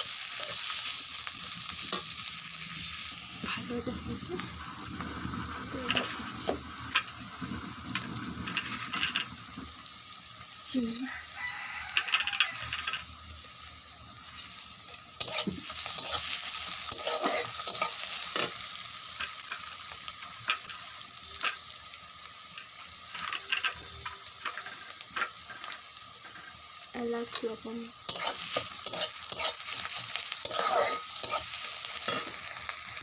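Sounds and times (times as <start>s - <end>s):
onions sizzling in oil: 0.0s - 33.0s
metal spatula scraping pan: 15.2s - 18.6s, 28.1s - 32.6s.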